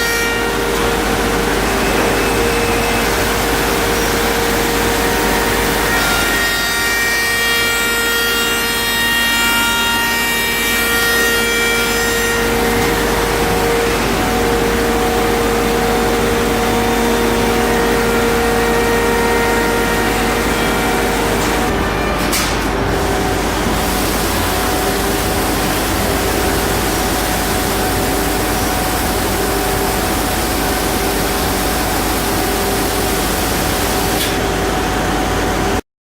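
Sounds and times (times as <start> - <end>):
router cutting wood: 4.0 - 22.2.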